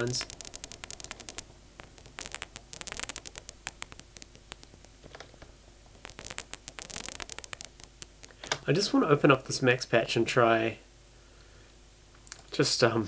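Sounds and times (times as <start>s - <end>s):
synthesized paper crumpling: 0.0s - 8.5s.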